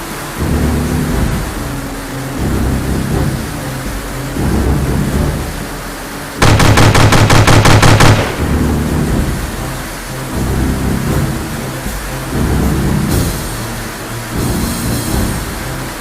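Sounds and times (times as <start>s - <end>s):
steady low rumble: 0.0s - 16.0s
rapid machine-gun fire: 6.4s - 8.8s.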